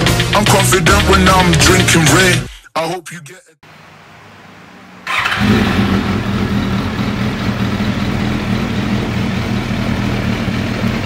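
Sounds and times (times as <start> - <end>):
motorcycle engine idling: 5.1 - 11.0.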